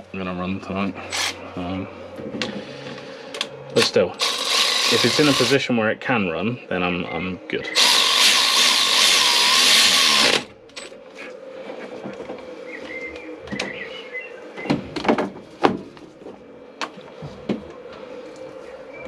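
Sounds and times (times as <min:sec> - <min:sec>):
cordless drill: 0:01.1 - 0:01.4, 0:04.2 - 0:05.6, 0:07.8 - 0:10.5
birds chirping: 0:06.8 - 0:08.0, 0:12.4 - 0:14.9, 0:18.5 - 0:19.0.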